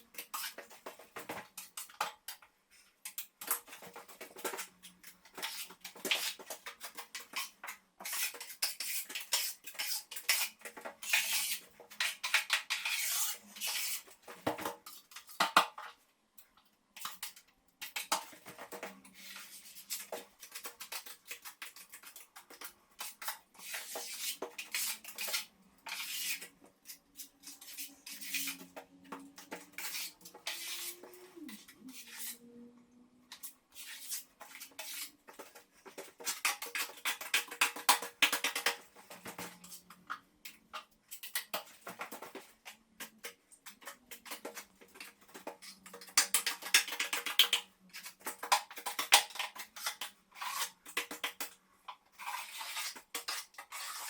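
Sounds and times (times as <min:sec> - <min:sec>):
metal hand tools scraping and clinking: 0:22.5 - 0:32.4.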